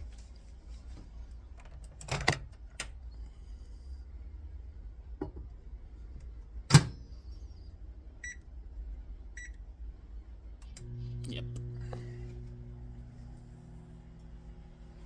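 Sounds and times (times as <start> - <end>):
microwave door clunk: 6.7 - 7.0
microwave keypad beeps: 8.2 - 8.4, 9.4 - 9.6.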